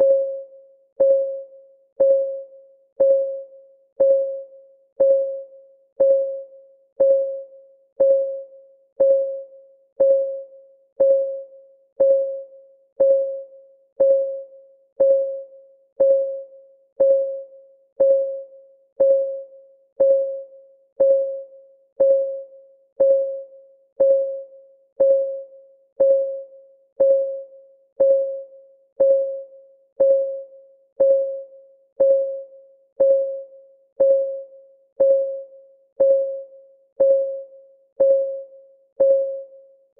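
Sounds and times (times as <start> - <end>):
timer clock ticking: 1.0 - 1.4, 2.0 - 2.4, 3.0 - 3.4, 4.0 - 4.4, 5.0 - 5.4, 6.0 - 6.4, 7.0 - 7.4, 8.0 - 8.4, 9.0 - 9.4, 10.0 - 10.4, 11.0 - 11.4, 12.0 - 12.4, 13.0 - 13.4, 14.0 - 14.4, 15.0 - 15.4, 16.0 - 16.4, 17.0 - 17.4, 18.0 - 18.4, 19.0 - 19.4, 20.0 - 20.4, 21.0 - 21.4, 22.0 - 22.4, 23.0 - 23.4, 24.0 - 24.4, 25.0 - 25.4, 26.0 - 26.4, 27.0 - 27.4, 28.0 - 28.4, 29.0 - 29.4, 30.0 - 30.4, 31.0 - 31.4, 32.0 - 32.4, 33.0 - 33.4, 34.0 - 34.4, 35.0 - 38.4, 39.0 - 39.5.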